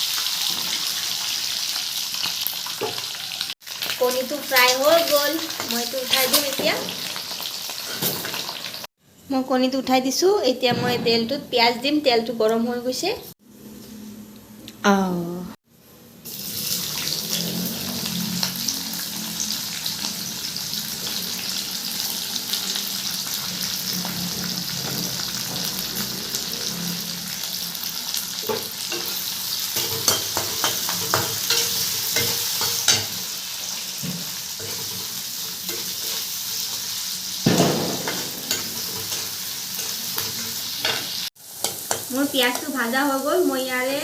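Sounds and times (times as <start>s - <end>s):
onions sizzling in oil: 0.0s - 10.3s, 15.8s - 44.0s
spatula scraping a pan: 28.4s - 42.6s.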